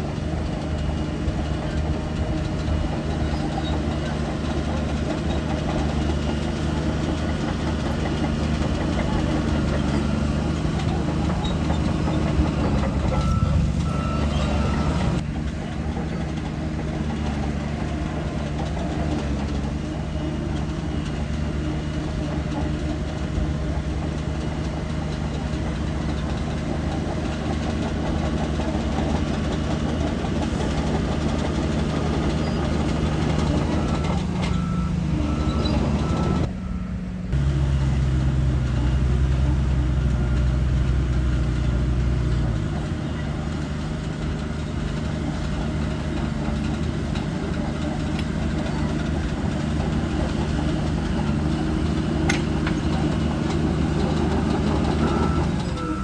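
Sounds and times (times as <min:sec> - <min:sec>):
bulldozer diesel engine running: 0:00.0 - 0:56.0
reversing alarm beeping: 0:10.8 - 0:15.2, 0:30.6 - 0:38.0, 0:52.6 - 0:56.0.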